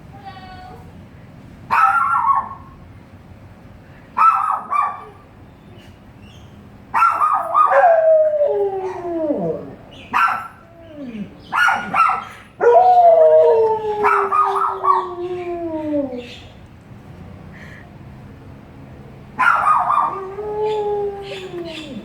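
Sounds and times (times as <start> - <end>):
dog howling and yowling: 7.2 - 16.4, 19.4 - 22.0.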